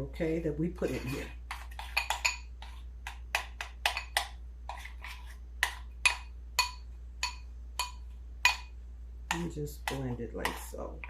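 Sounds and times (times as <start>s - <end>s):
spoon clinking against bowl: 1.0s - 2.5s.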